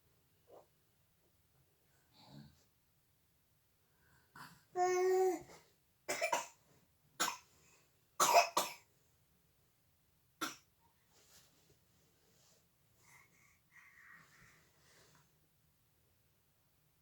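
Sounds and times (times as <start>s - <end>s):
child coughing: 6.1s - 6.6s, 8.2s - 8.8s.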